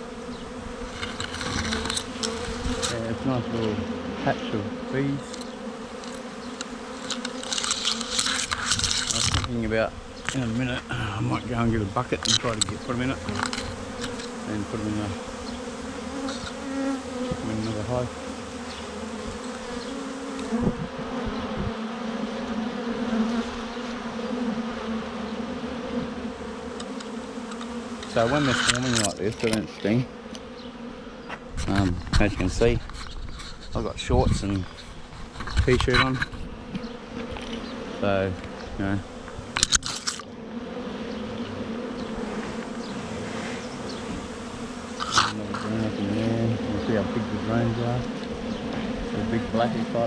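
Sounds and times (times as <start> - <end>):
bees buzzing: 0.0 - 50.0.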